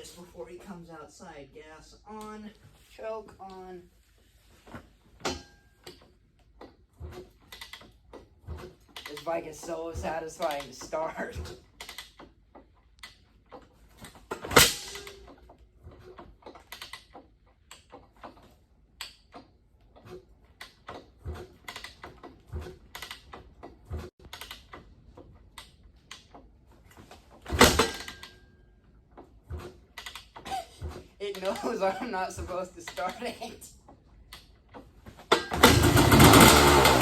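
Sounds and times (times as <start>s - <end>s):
clicks and knocks handling bike: 2.2s - 37.0s
dirt bike kick-start turning over: 35.2s - 37.0s.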